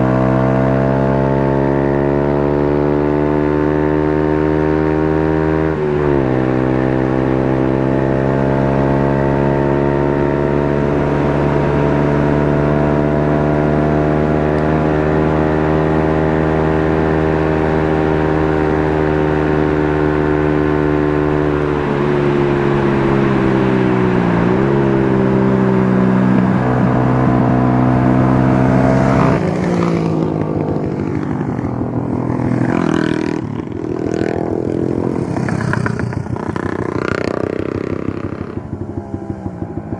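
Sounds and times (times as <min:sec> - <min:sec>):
motorcycle engine running: 0:00.0 - 0:39.9
rushing wind noise: 0:19.5 - 0:39.9.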